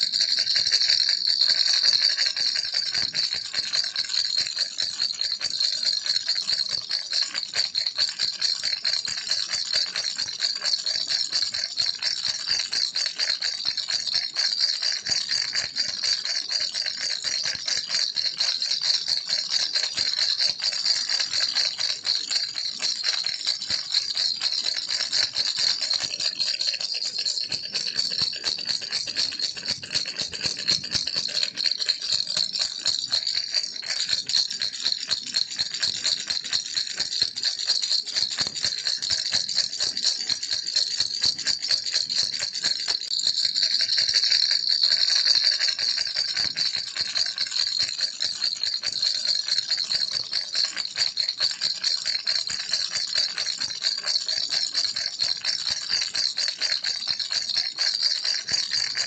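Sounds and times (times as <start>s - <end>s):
baby rattle shaken: 0.0s - 11.3s, 15.0s - 18.3s, 18.9s - 48.0s, 58.4s - 59.0s.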